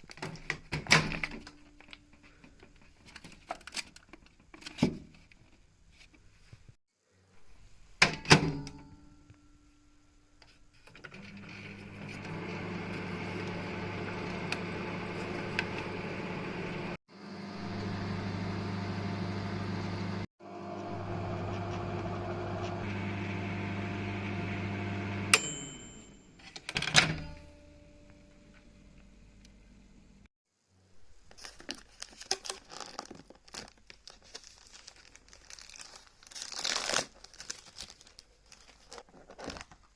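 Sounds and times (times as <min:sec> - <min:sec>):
microwave oven humming: 0:11.2 - 0:26.3
microwave chime: 0:24.9 - 0:26.4.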